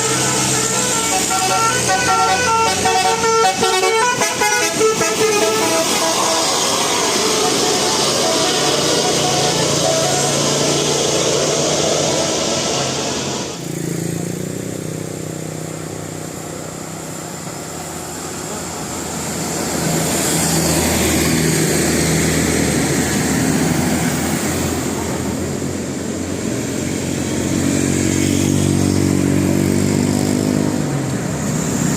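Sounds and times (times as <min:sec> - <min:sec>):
vehicle engines accelerating: 0:00.0 - 0:31.9.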